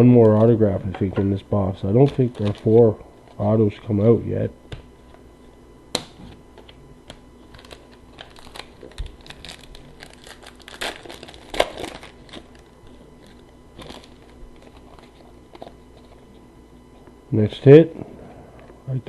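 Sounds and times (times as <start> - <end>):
wrapper crinkling and tearing: 2.0 - 2.9, 7.4 - 16.2
cards being handled: 2.0 - 3.4, 6.0 - 17.1.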